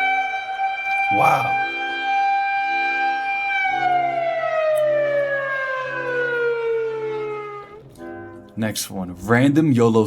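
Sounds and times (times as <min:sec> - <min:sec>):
warning siren winding down: 0:00.0 - 0:07.9.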